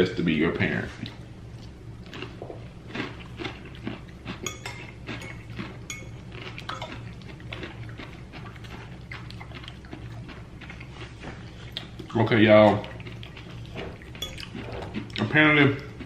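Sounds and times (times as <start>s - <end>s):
ringing clinks: 4.4s - 6.9s, 14.2s - 14.5s
cutlery scraping on plate: 4.4s - 7.0s, 14.2s - 15.0s.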